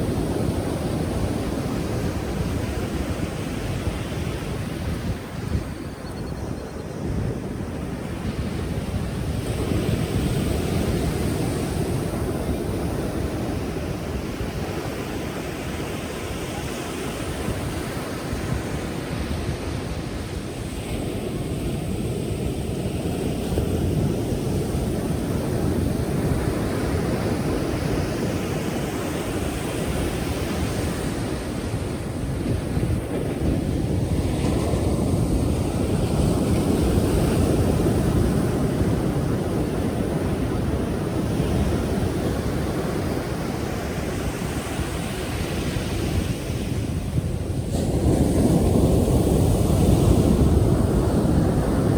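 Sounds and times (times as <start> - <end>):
waves breaking and washing in: 0.0 - 51.9.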